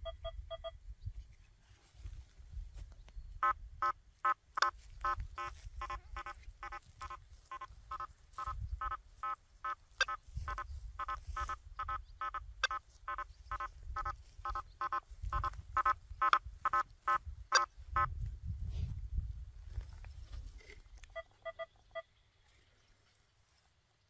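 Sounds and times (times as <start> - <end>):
metal detector beeps: 0.0 - 0.8, 4.6 - 16.8, 21.1 - 22.1.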